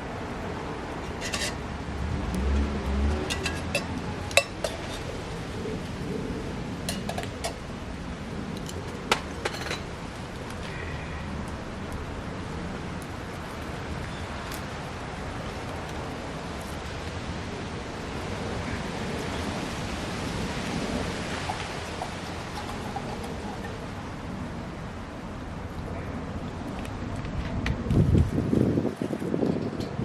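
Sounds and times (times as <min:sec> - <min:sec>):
fire clicks and snaps: 0:00.4 - 0:18.4, 0:21.4 - 0:28.4.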